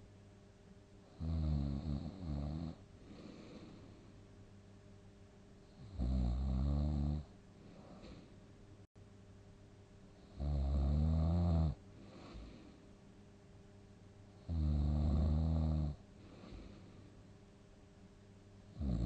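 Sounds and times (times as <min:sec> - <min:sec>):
loud rattling snores: 0:01.2 - 0:02.8, 0:05.8 - 0:07.3, 0:10.4 - 0:11.8, 0:14.5 - 0:16.0, 0:18.8 - 0:19.0
quiet breathing: 0:02.0 - 0:04.4, 0:06.6 - 0:08.5, 0:11.7 - 0:13.2, 0:15.2 - 0:17.5.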